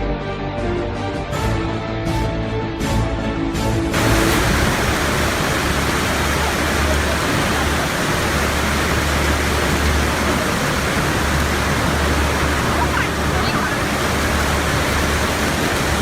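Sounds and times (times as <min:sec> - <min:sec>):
music: 0:00.0 - 0:04.6
loud steady rushing noise: 0:03.9 - 0:16.0
low rumble: 0:04.0 - 0:16.0.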